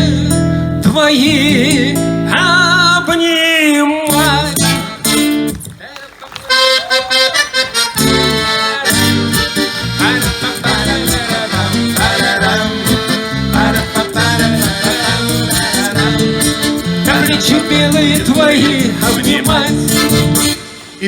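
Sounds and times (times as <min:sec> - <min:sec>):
rhythmic acoustic accompaniment: 0:00.0 - 0:03.1, 0:04.0 - 0:05.8, 0:06.4 - 0:21.0
pitch-bending melody line: 0:07.8 - 0:20.6.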